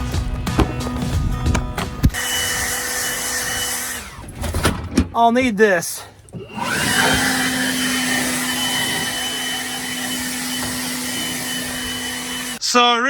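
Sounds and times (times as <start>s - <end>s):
electric fan motor running: 2.1s - 4.2s, 6.4s - 12.6s.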